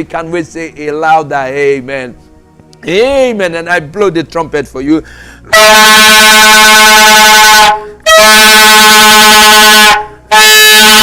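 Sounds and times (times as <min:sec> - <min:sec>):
horn blasts at steady pitch: 0:05.4 - 0:11.0.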